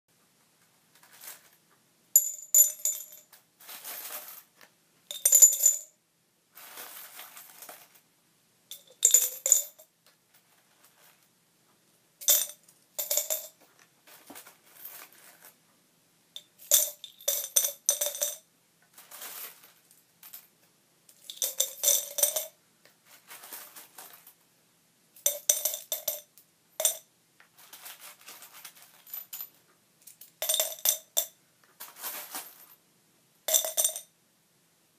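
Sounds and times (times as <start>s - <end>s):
coins clinking into glass jar: 2.2s - 4.4s, 5.1s - 5.9s, 8.7s - 9.8s, 12.2s - 13.6s, 16.4s - 18.4s, 21.1s - 22.6s, 25.2s - 27.1s, 30.1s - 32.8s, 33.5s - 34.1s.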